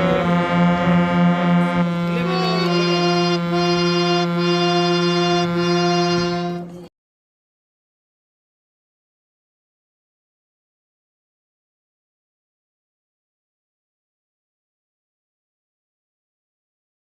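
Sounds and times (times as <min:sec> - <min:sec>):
harmonium chord: 0:00.0 - 0:06.9.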